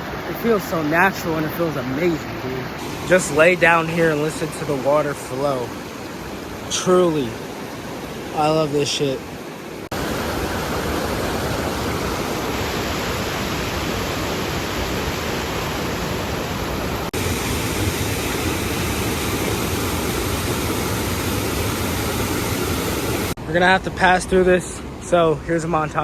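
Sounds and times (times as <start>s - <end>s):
stream rushing over rocks: 0.0s - 23.4s.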